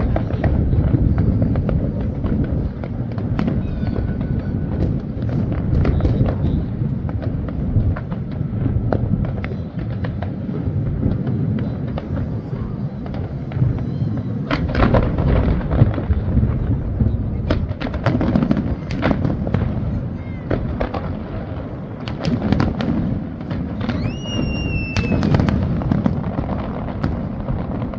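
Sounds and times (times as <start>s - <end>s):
fireworks cracks and pops: 0.0s - 27.9s
fireworks low booming: 0.0s - 27.9s.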